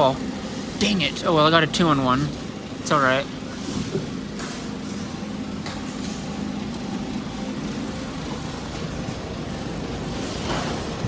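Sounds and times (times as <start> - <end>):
machine hum and hiss: 0.0 - 11.0.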